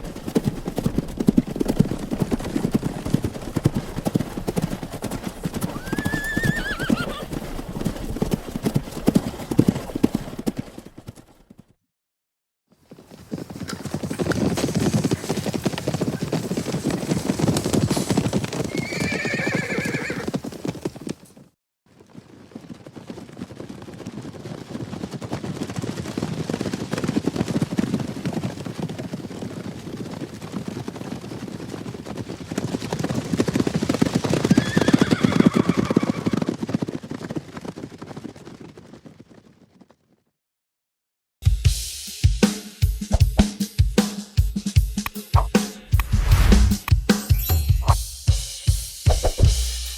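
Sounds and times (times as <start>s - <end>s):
horses galloping: 0.0s - 11.8s, 12.7s - 40.2s, 49.1s - 49.6s
horse whinnying: 5.6s - 7.4s, 18.6s - 20.4s, 34.5s - 36.4s.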